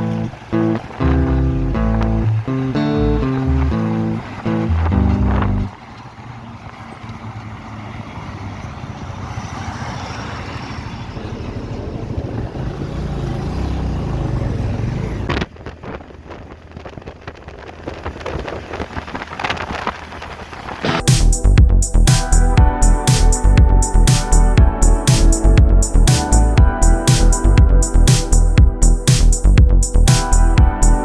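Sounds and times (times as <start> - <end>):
motorcycle engine running: 0.0 - 5.7, 20.8 - 31.0
wind and road noise: 0.0 - 31.0.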